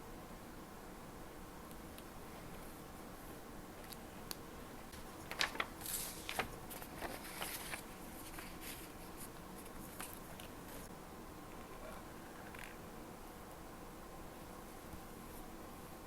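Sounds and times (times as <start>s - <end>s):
paper rustling: 4.9s - 10.9s.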